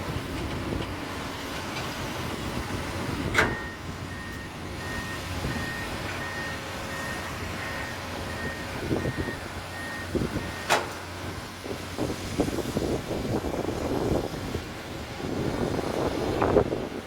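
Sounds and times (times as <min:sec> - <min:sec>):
excavator diesel engine running: 0:00.0 - 0:17.0
high-pitched warning alarm beeping: 0:03.5 - 0:10.8.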